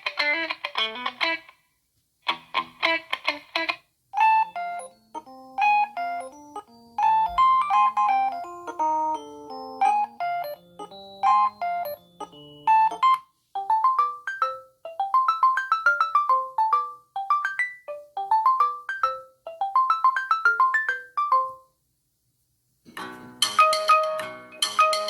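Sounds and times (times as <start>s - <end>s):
ringtone with rising note runs: 4.2s - 21.5s
ringtone melody with bass line: 4.2s - 21.7s, 23.2s - 25.0s.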